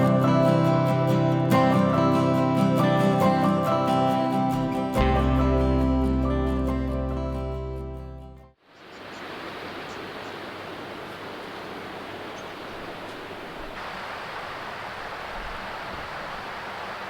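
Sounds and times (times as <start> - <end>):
music: 0.0 - 8.6
steady hiss: 8.6 - 17.0.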